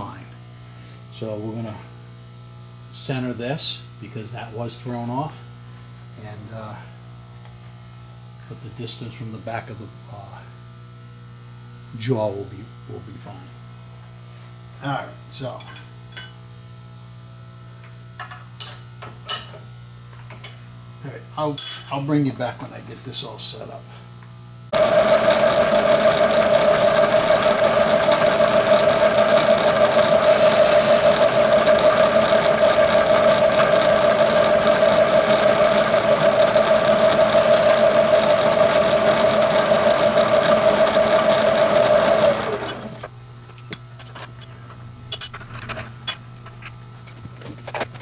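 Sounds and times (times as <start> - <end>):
shop machine humming: 24.7 - 43.2.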